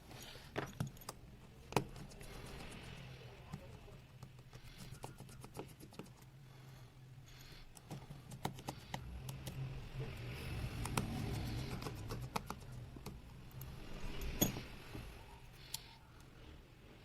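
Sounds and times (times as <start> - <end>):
steady low hum: 0.0 - 17.0
hand tools clicking and tapping: 7.7 - 9.6, 11.7 - 14.7.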